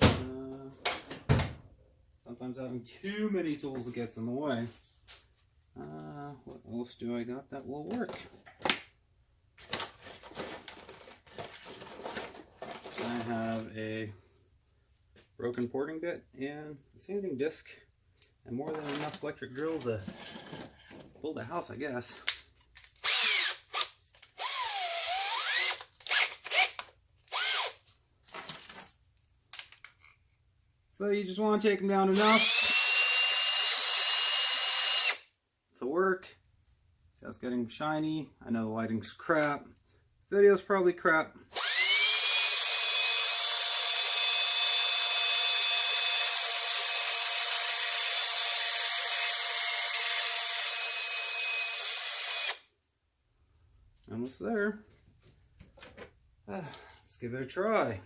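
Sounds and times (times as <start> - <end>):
electric drill grinding metal: 23.0 - 27.8, 32.1 - 35.2, 41.5 - 52.6.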